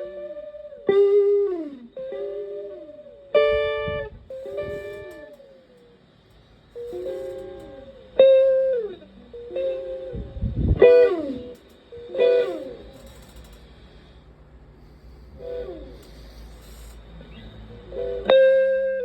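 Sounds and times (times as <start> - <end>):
electric guitar notes with echo: 0.0 - 5.0.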